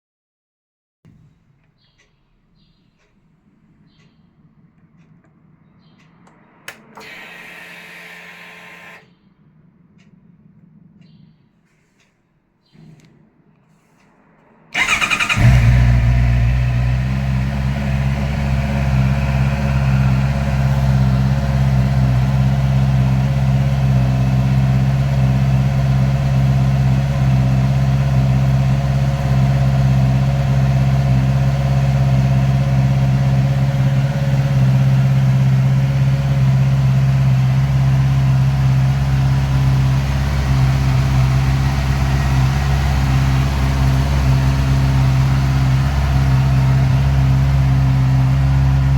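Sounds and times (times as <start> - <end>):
motorcycle engine starting: 1.1 - 9.3, 14.7 - 48.9
motorcycle engine idling: 14.7 - 48.9.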